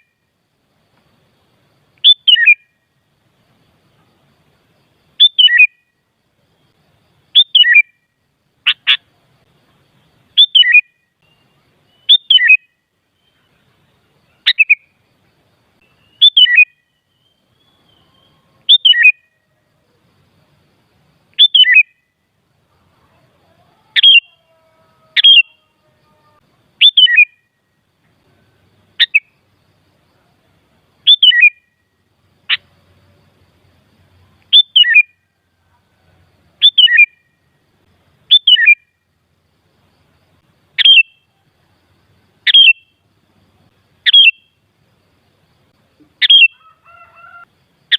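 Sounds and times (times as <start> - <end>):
bulbul calling: 2.0 - 2.8, 5.2 - 5.9, 7.4 - 9.2, 10.4 - 13.6, 14.3 - 15.0, 15.8 - 19.4, 21.4 - 22.0, 23.9 - 24.5, 25.1 - 25.6, 26.8 - 27.5, 29.0 - 29.4, 31.1 - 31.8, 34.5 - 35.2, 36.6 - 37.3, 38.3 - 38.9, 40.8 - 41.3, 42.4 - 43.0, 44.0 - 44.6, 46.0 - 47.4.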